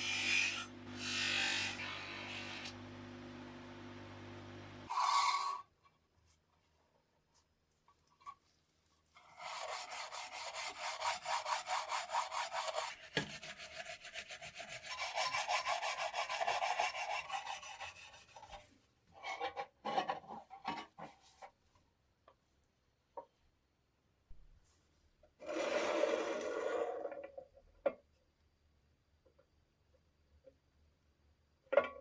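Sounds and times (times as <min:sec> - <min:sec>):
hand sanding strokes: 0:09.1 - 0:18.6.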